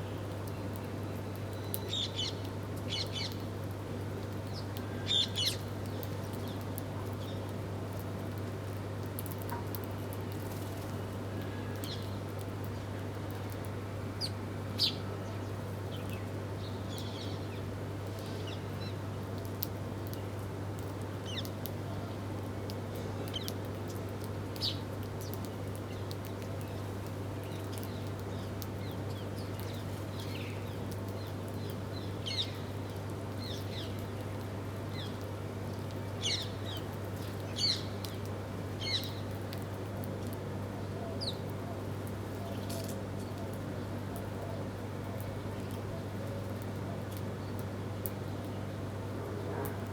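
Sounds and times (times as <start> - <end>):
small birds chirping: 23.3 - 34.3, 34.9 - 39.4.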